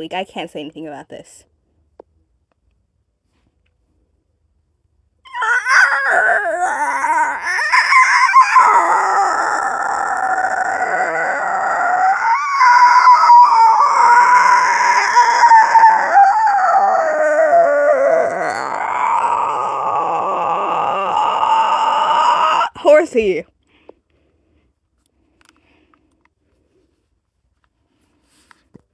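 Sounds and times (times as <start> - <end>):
person howling wail: 5.3 - 22.8.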